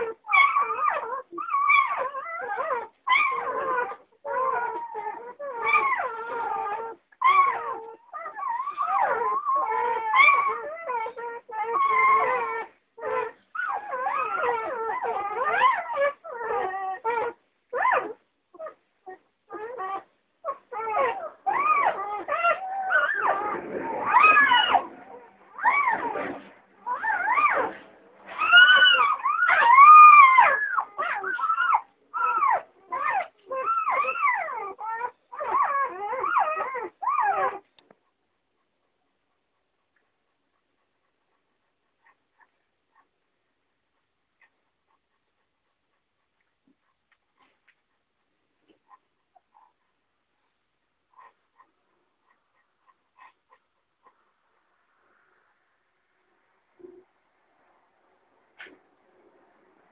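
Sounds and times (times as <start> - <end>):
puppies whining and howling: 0.0 - 37.8.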